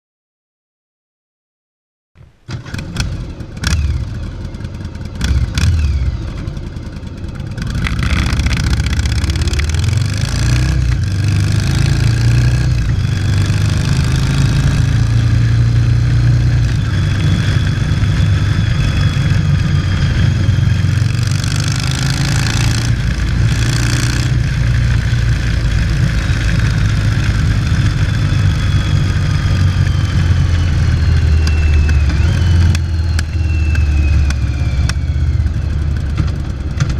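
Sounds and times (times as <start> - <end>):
motorcycle engine revving: 2.5 - 36.9.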